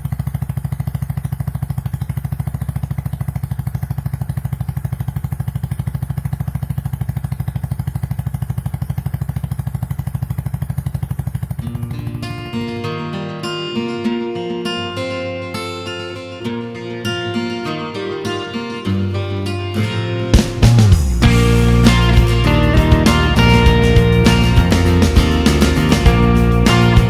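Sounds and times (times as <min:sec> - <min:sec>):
motorcycle engine idling: 0:00.0 - 0:12.7, 0:20.4 - 0:27.0
acoustic guitar music: 0:11.5 - 0:27.0.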